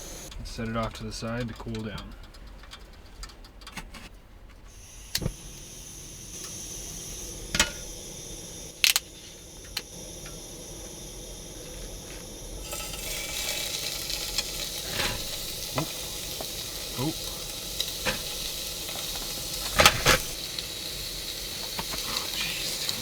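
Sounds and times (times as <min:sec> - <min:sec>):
food sizzling in a frying pan: 0:00.0 - 0:00.3, 0:04.7 - 0:23.0
pots and utensils clinking: 0:07.4 - 0:10.4, 0:12.6 - 0:23.0.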